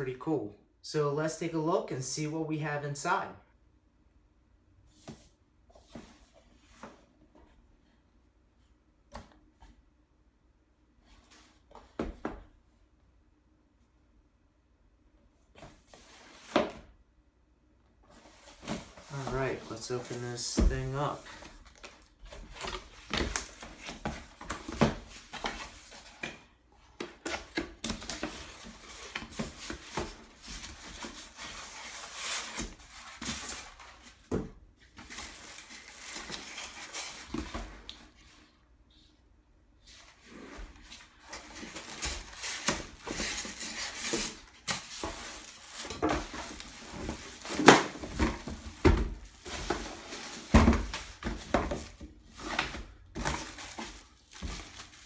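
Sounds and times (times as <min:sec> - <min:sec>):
cardboard knocks and scrapes: 0:40.2 - 0:55.0.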